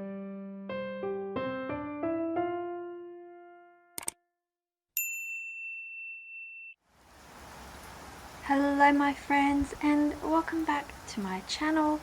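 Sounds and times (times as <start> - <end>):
quick clicks: 4.0 - 4.2
high ding: 5.0 - 6.8.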